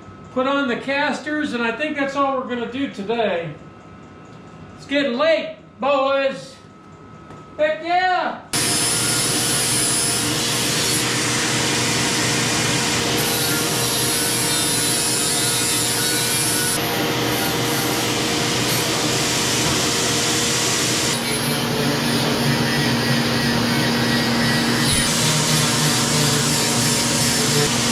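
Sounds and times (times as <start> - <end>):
angle grinder grinding metal: 8.6 - 27.9.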